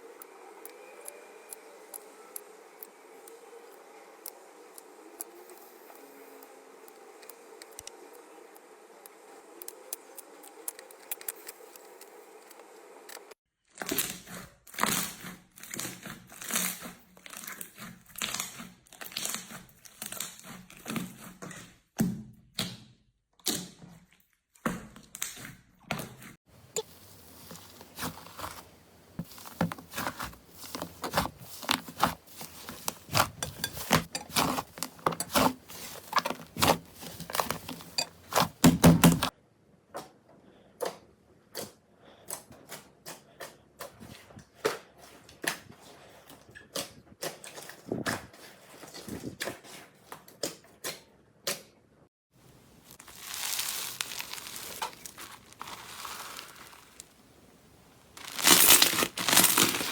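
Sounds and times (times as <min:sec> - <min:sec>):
soft squishy hiss: 0:52.4 - 0:59.9
slime popping: 0:53.0 - 0:57.1, 0:58.2 - 0:59.9.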